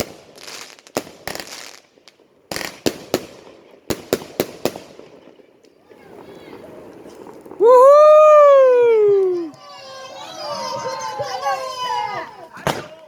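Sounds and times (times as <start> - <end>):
fireworks bangs: 0.0 - 13.0
fireworks crackling hiss: 0.0 - 13.0.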